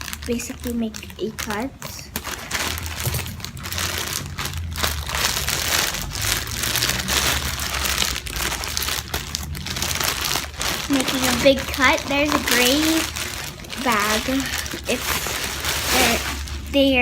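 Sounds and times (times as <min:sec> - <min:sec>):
packaging crinkling and rustling: 0:00.0 - 0:17.0
scissors cutting packaging: 0:01.4 - 0:16.8.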